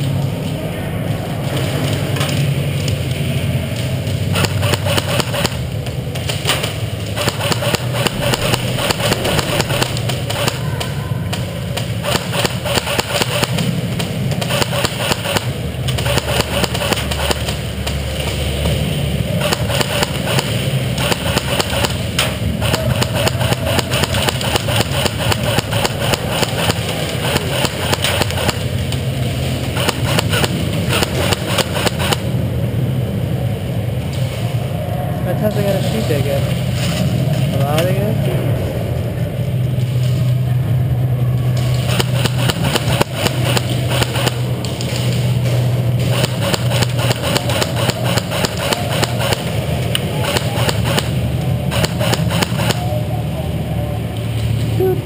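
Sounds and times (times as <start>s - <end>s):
steady low rumble: 0.0s - 55.0s
airsoft guns clicking and knocking: 19.4s - 29.0s, 41.8s - 51.1s.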